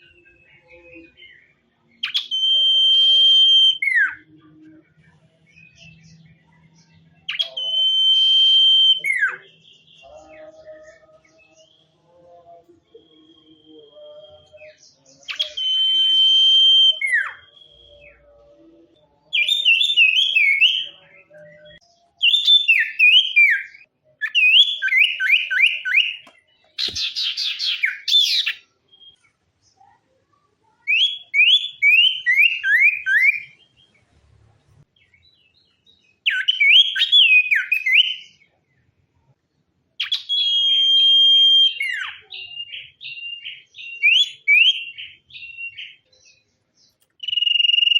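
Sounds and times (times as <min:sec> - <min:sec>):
bird singing whistles: 0:00.0 - 0:04.4, 0:07.2 - 0:10.1, 0:12.9 - 0:18.3, 0:19.3 - 0:29.2, 0:30.9 - 0:33.6, 0:35.9 - 0:38.3, 0:40.0 - 0:46.0, 0:47.2 - 0:47.9.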